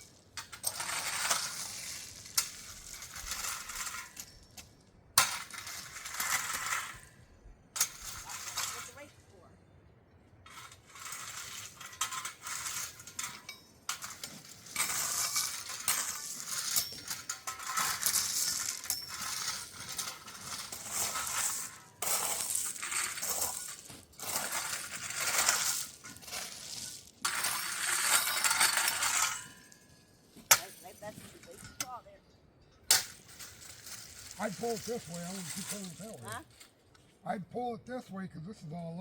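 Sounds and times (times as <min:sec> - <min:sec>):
gravel scraping with hand tools: 0:00.0 - 0:09.5, 0:10.4 - 0:32.2, 0:32.8 - 0:39.0
stones clinking: 0:12.1 - 0:32.0.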